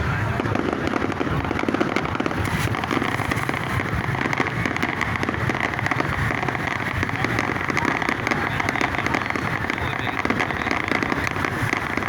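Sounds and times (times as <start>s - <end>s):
fireworks crackling: 0.0s - 12.0s.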